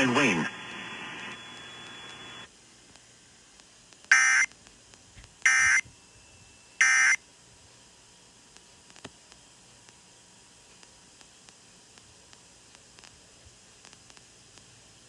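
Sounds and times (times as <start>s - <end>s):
short digital buzzes: 5.4s - 5.8s.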